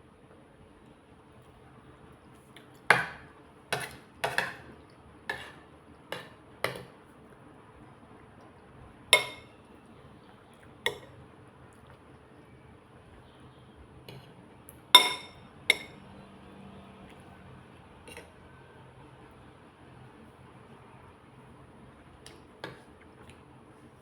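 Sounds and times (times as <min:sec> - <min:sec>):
utensils clinking against a dish: 0:03.8 - 0:04.7, 0:09.2 - 0:09.5, 0:15.0 - 0:16.0.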